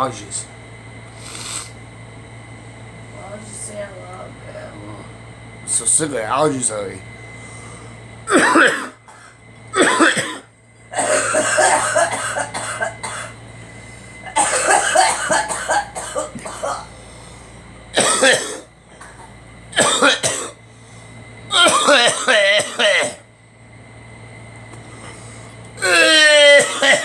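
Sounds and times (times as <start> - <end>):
people coughing: 8.3 - 13.4, 14.3 - 17.0, 18.0 - 20.6, 21.5 - 23.3, 25.8 - 27.0.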